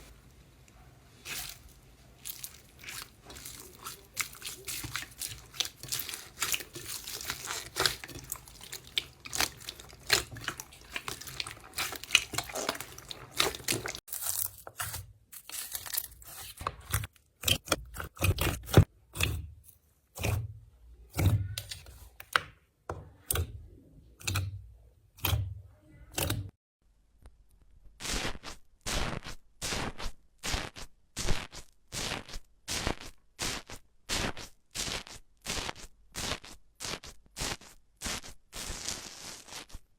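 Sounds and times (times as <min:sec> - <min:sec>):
slime crackling and popping: 0:01.3 - 0:17.6.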